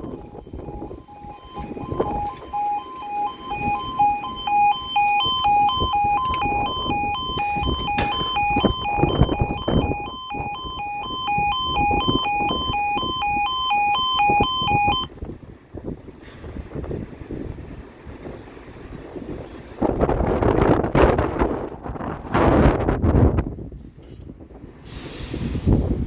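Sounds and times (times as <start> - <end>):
level crossing alarm: 0.0 - 15.2
wind buffeting microphone: 0.0 - 26.0.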